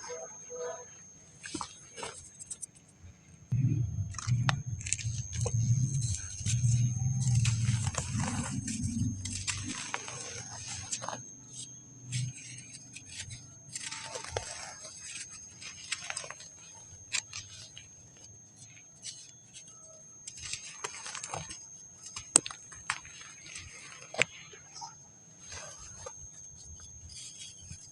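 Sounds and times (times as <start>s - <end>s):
dry sand crumbling and cracking: 3.5s - 24.5s.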